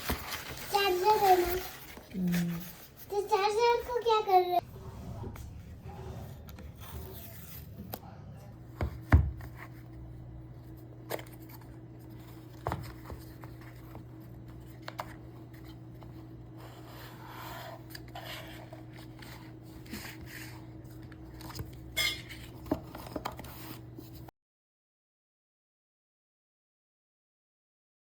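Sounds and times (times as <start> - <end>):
packaging rustle: 0.0 - 3.1
steady low hum: 4.6 - 24.3.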